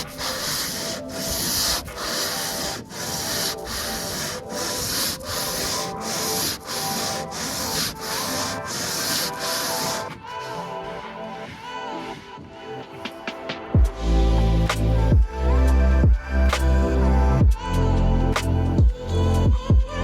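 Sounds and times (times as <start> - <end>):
hand sanding rasping strokes: 0.0 - 12.0
background music: 0.0 - 20.0.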